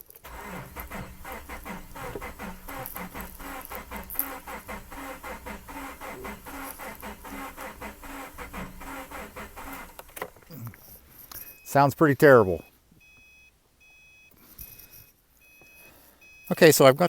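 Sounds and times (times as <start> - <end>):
engine cranking without starting: 0.0 - 11.5.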